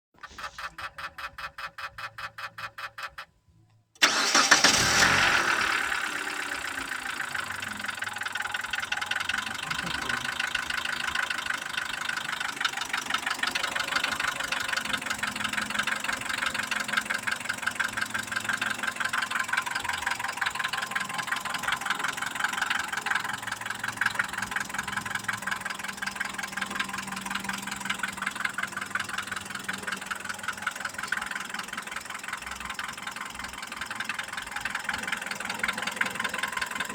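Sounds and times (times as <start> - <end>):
engine knocking: 0.2 - 3.3, 4.0 - 36.9
car engine starting and idling: 0.2 - 36.9
starter clicking: 4.0 - 5.6.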